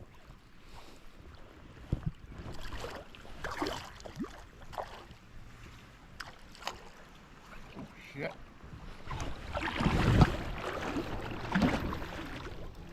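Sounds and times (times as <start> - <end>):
creek water splashing and rushing: 2.2 - 12.9
wind buffeting the microphone: 8.6 - 12.9.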